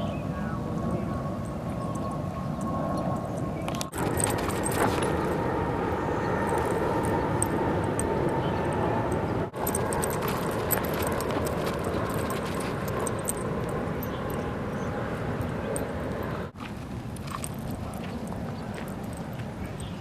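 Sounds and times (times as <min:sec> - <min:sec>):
outdoor background noise: 0:00.0 - 0:20.0
dog collar tags jingling: 0:01.8 - 0:05.4, 0:06.4 - 0:08.8, 0:09.6 - 0:16.4, 0:17.1 - 0:20.0.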